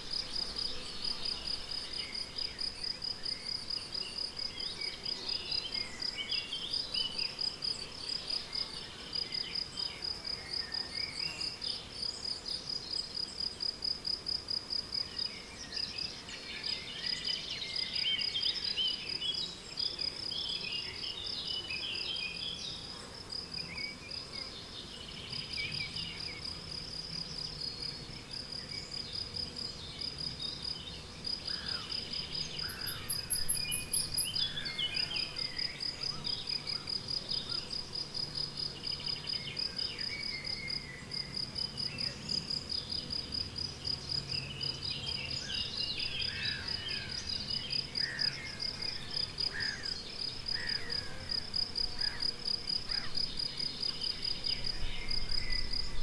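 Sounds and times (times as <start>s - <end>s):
songbirds singing: 0.0s - 13.6s, 15.0s - 56.0s
crickets chirping: 25.3s - 56.0s.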